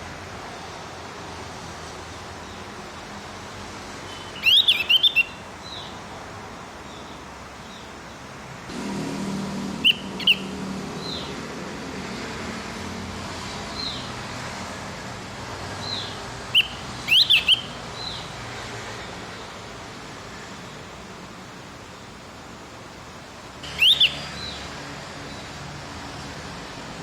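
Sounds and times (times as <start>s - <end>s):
bird twittering chirps: 4.1s - 6.0s, 9.8s - 11.3s, 15.8s - 18.3s, 23.6s - 24.7s
background hiss: 13.0s - 27.0s.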